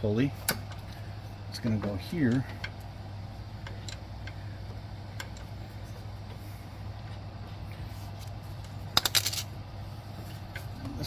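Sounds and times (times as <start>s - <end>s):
steady low hum: 0.0s - 11.0s
light clicks of metal parts: 0.4s - 5.6s.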